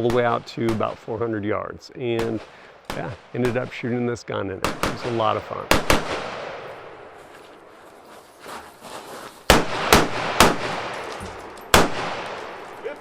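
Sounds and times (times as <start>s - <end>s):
gunshots echoing: 4.6s - 7.2s, 9.5s - 13.0s.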